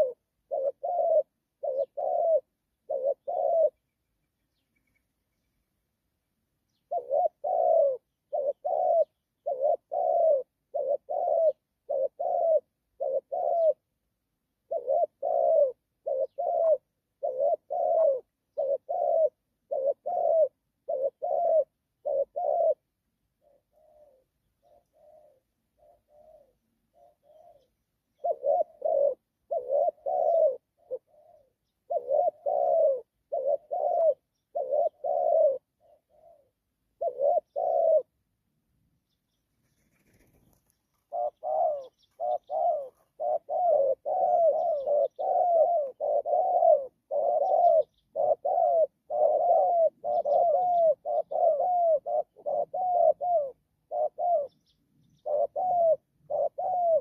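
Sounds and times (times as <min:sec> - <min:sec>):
dove cooing: 0:00.0 - 0:05.5, 0:06.7 - 0:38.2, 0:39.3 - 0:57.0.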